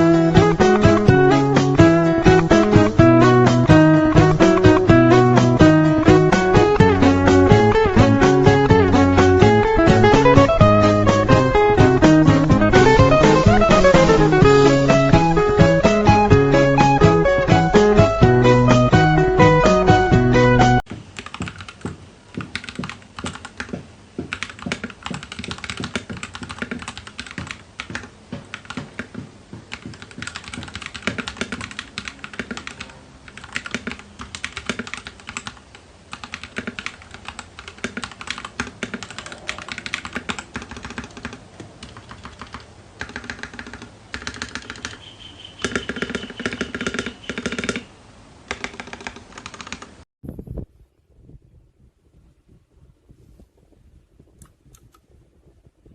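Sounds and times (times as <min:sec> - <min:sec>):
mechanical keyboard typing: 0:00.3 - 0:14.3, 0:21.2 - 0:45.0, 0:45.6 - 0:47.9, 0:48.5 - 0:50.0.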